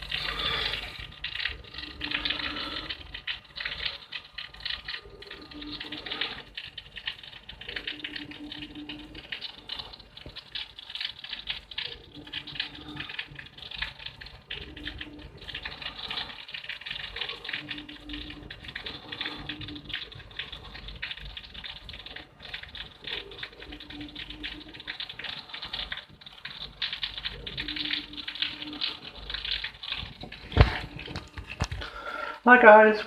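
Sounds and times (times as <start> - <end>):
rain pattering: 0.0 - 33.0.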